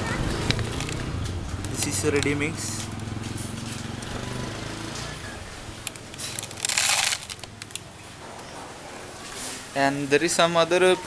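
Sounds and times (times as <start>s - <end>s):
vehicle engine running: 0.0s - 8.2s.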